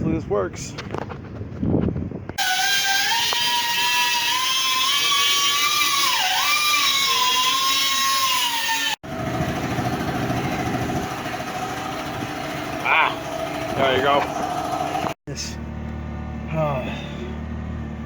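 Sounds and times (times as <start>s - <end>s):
car engine running: 9.0s - 18.0s.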